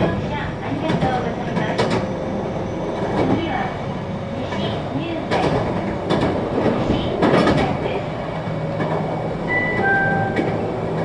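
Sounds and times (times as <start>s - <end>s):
train interior rumble: 0.0s - 11.0s
brief high tone: 9.5s - 10.5s.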